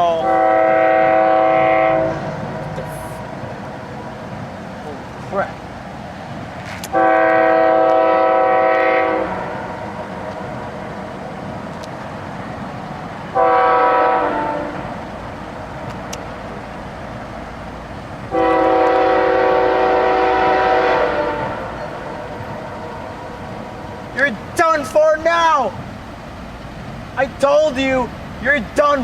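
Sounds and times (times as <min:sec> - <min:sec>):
train horn blasts: 0:00.0 - 0:02.8, 0:06.9 - 0:10.4, 0:13.3 - 0:15.0, 0:18.3 - 0:23.9
train rumbling: 0:00.0 - 0:29.0.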